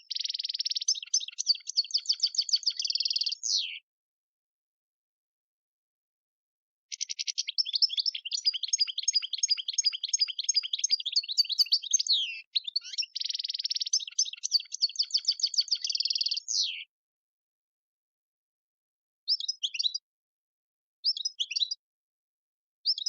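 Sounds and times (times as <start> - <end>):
goldfinch twittering song: 0.0 - 3.8, 6.9 - 16.9, 19.3 - 20.0, 21.0 - 21.8.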